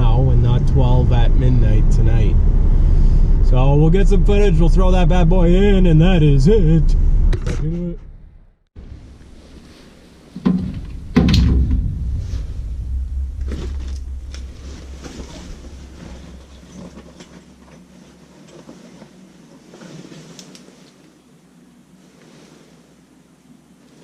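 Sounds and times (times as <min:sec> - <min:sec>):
low rumble: 0:00.0 - 0:18.1
heavy thumps: 0:10.3 - 0:17.8
knocks and clicks: 0:10.4 - 0:17.3.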